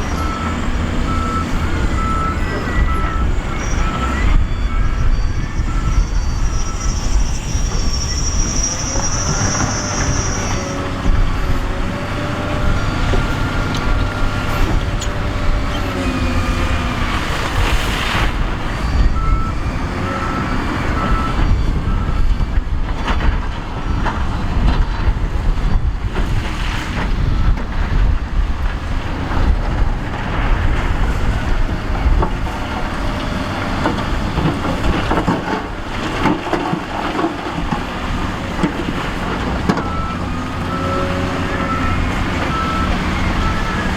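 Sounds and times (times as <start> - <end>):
reversing alarm beeping: 0.0 - 17.0, 18.9 - 22.3, 39.8 - 43.9
diesel machine engine rumble: 0.0 - 43.9.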